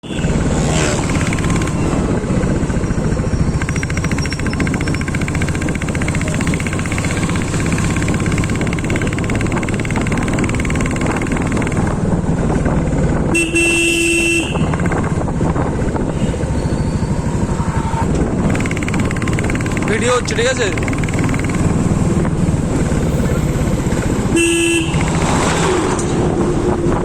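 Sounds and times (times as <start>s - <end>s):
motorcycle engine running: 0.0s - 27.0s
horn sounding: 24.3s - 25.2s.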